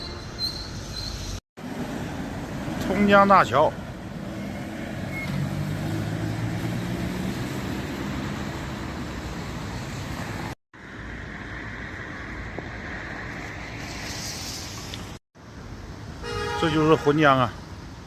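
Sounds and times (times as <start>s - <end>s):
steady traffic roar: 0.0s - 18.0s
vehicle engine passing: 4.2s - 10.6s.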